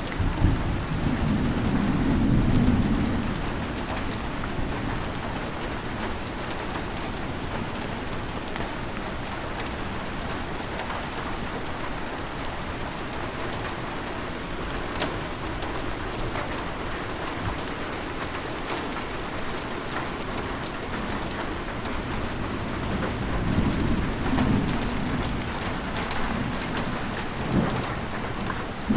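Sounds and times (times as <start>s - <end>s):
heavy rain falling: 0.0s - 28.9s
thunder rumble: 0.1s - 5.5s, 22.0s - 28.9s
raindrop hits: 14.9s - 28.9s.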